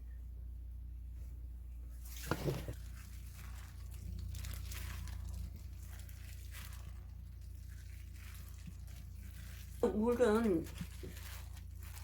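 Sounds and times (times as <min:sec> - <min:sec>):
crinkling and rustling: 0:02.0 - 0:12.0
water pouring onto powder: 0:02.1 - 0:12.0.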